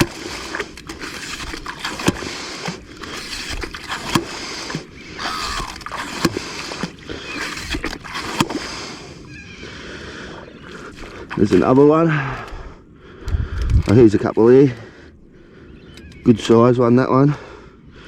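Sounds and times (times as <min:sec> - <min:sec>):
pump rushing in wet sand: 0:00.0 - 0:09.2.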